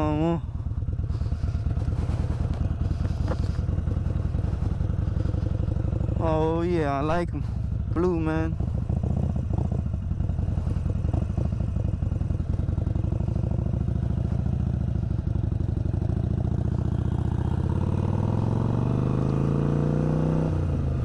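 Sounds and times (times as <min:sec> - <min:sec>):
motorcycle engine accelerating: 0:00.0 - 0:21.0.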